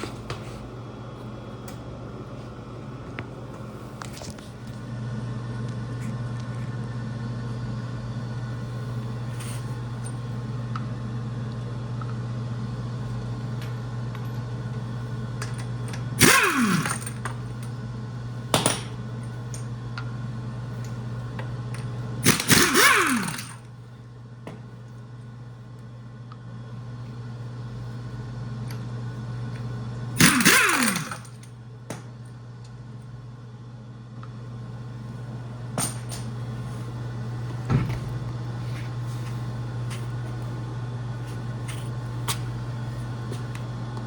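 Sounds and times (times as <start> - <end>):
machine hum: 0.0 - 44.0
power tool bursts: 16.2 - 17.3, 22.2 - 23.6, 30.2 - 31.4.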